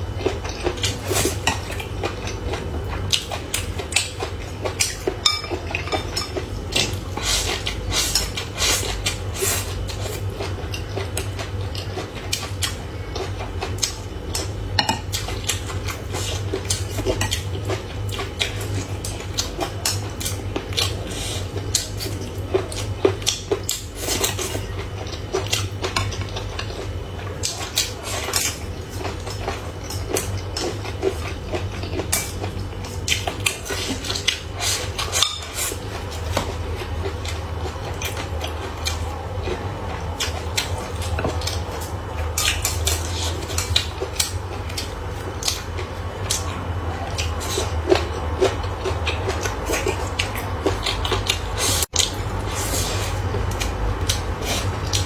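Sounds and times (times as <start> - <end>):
steady low hum: 0.0 - 55.0
utensils clinking against bowls: 4.9 - 7.0, 33.6 - 36.5.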